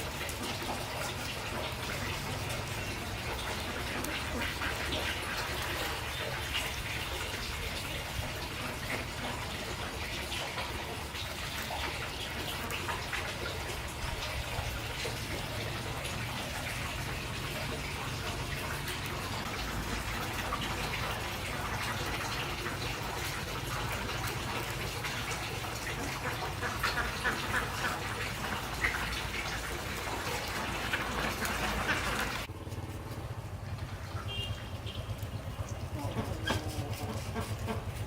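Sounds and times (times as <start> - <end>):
light splashing: 0.0 - 38.0
running water: 0.0 - 38.0.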